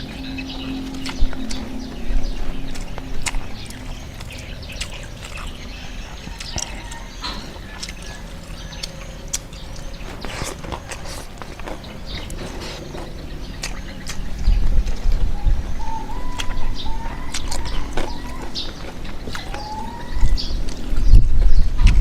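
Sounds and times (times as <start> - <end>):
wet chewing and lip-smacking: 0.0 - 22.0
sharp mouth clicks: 0.8 - 5.7, 6.4 - 15.1.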